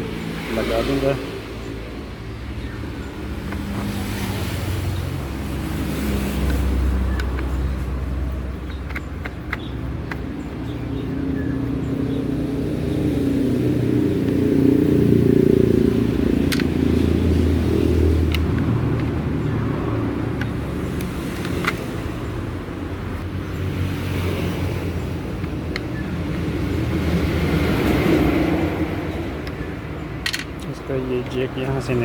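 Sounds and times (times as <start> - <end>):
sharp clicks: 6.3 - 11.0, 16.4 - 17.3, 18.1 - 22.4, 25.2 - 27.3.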